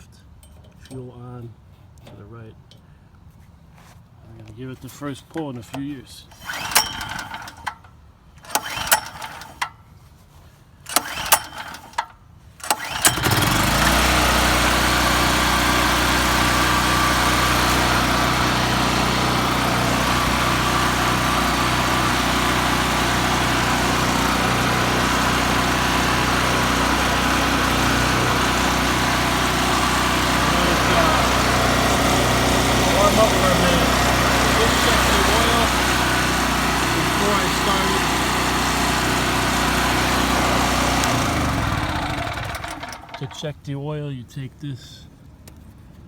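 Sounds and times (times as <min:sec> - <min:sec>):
recoil starter pulls clicking: 0:05.3 - 0:09.8, 0:10.9 - 0:43.5
generator engine running: 0:05.7 - 0:07.8, 0:08.4 - 0:09.7, 0:10.9 - 0:43.5.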